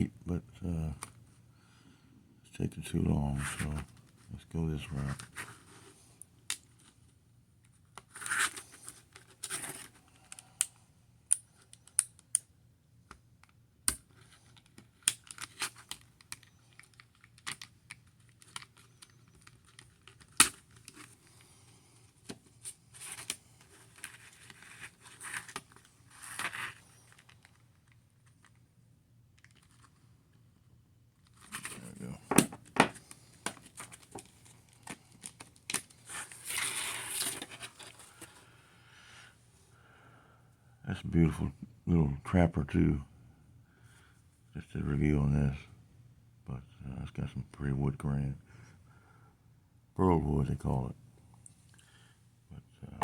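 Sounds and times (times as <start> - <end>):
packaging clicks and snaps: 10.2 - 12.5, 13.1 - 21.1.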